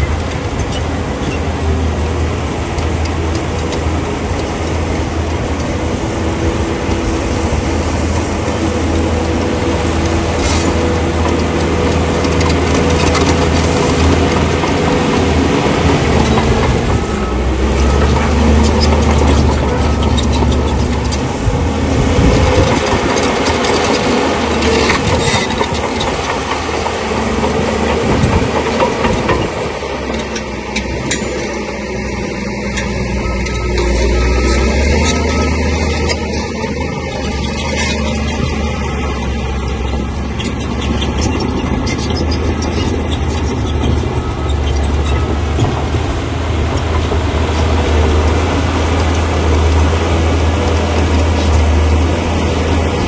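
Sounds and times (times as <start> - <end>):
bulldozer diesel engine running: 0.0 - 53.0
tracks and blade clanking on stone: 10.0 - 17.0, 22.2 - 38.6.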